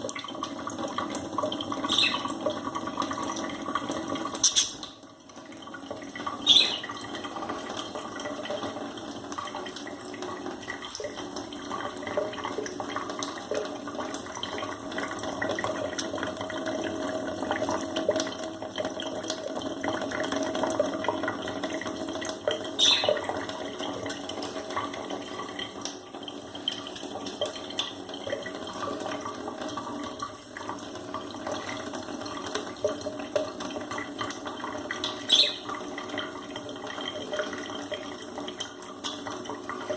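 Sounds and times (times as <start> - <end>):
running water: 0.0 - 39.9
budgerigars chirping: 1.9 - 2.2, 4.4 - 4.8, 6.5 - 6.9, 22.8 - 23.1, 35.3 - 35.7.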